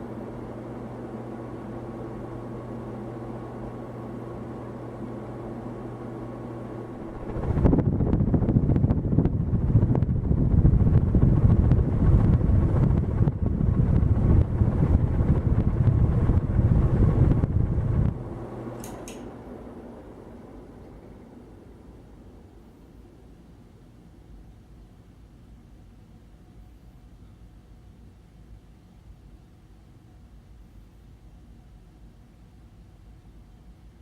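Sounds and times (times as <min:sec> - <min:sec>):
ceiling fan motor humming: 0:00.0 - 0:34.0
wind buffeting microphone: 0:07.1 - 0:18.4.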